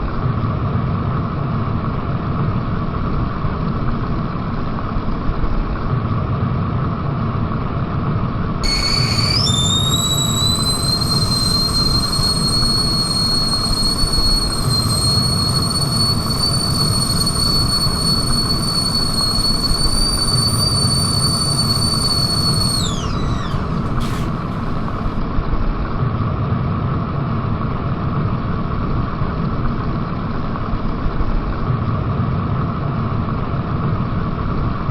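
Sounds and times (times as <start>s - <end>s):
kettle whistling: 8.6s - 25.2s.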